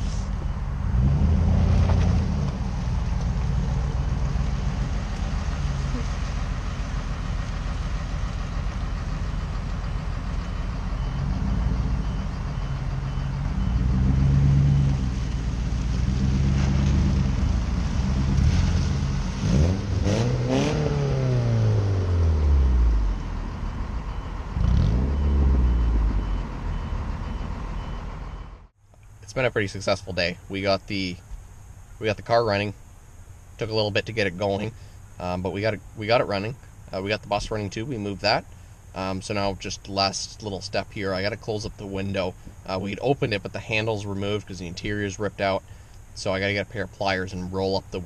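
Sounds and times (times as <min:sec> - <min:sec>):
vehicle engine running and revving: 0:00.8 - 0:27.3.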